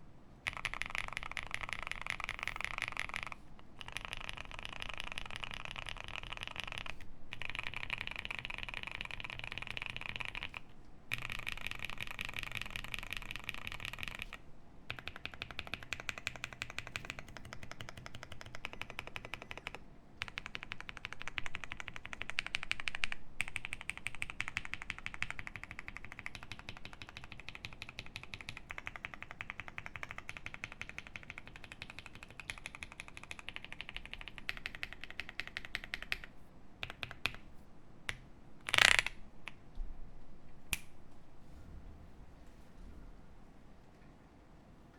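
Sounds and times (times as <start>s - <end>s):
fast typing on mechanical keyboard: 0.4s - 37.4s, 38.1s - 39.2s.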